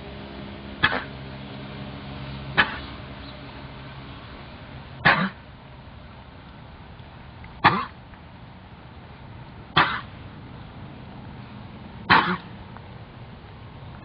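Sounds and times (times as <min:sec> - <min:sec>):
horse coughing: 0:00.8 - 0:01.1, 0:02.6 - 0:03.0, 0:05.0 - 0:05.4, 0:07.6 - 0:08.0, 0:09.8 - 0:10.1, 0:12.1 - 0:12.5.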